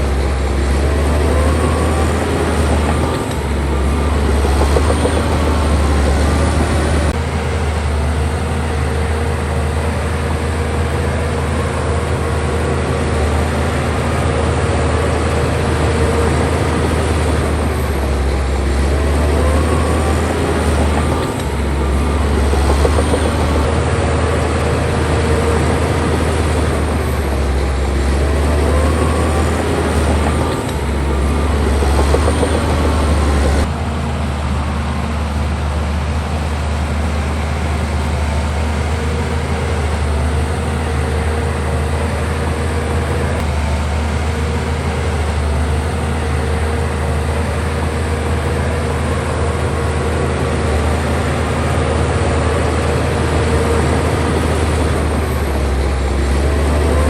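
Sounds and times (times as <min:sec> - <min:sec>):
heavy diesel machinery running: 0:00.0 - 0:57.0.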